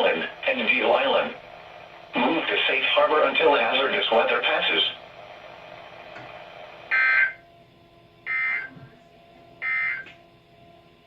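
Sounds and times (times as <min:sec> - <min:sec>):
digital data tone bursts: 0:06.9 - 0:07.4, 0:08.3 - 0:08.7, 0:09.6 - 0:10.1.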